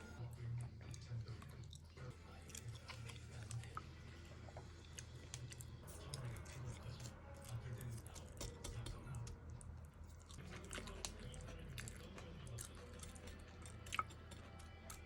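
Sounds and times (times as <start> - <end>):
chewing and biting: 0.0 - 15.0.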